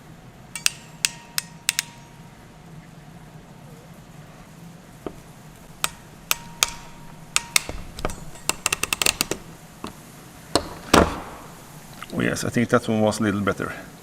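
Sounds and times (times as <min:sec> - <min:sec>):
ratcheting crimping tool clicking: 0:00.6 - 0:02.2, 0:05.1 - 0:12.0.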